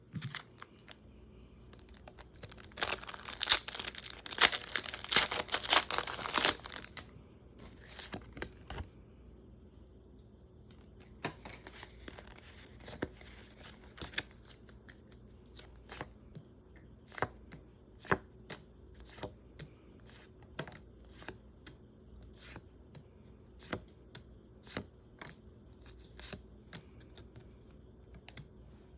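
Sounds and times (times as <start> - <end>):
foil wrapper tearing and crinkling: 1.7 - 7.0.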